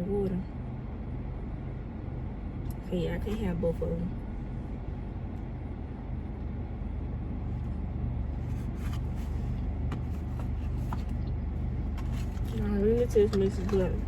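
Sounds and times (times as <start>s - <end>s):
car running hum inside cabin: 0.0s - 14.0s
faint clicks and rustles: 7.5s - 14.0s.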